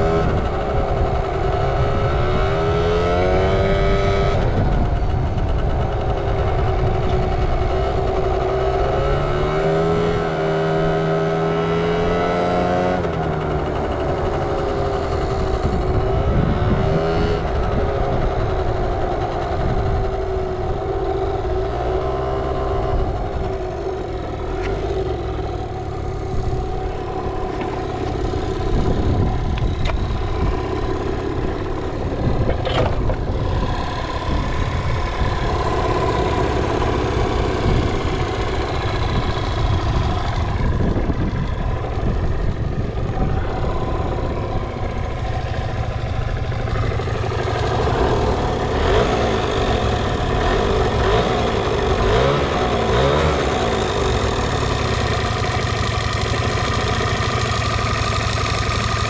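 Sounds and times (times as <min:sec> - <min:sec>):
scooter engine running: 0:00.0 - 0:59.0.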